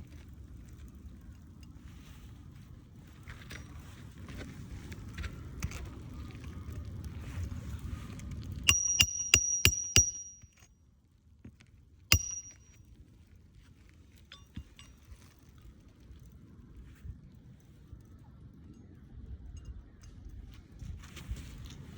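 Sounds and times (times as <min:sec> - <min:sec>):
wind rumbling on microphone: 0:00.0 - 0:08.7, 0:14.6 - 0:21.9
hammer striking metal: 0:08.7 - 0:10.6, 0:12.1 - 0:12.8.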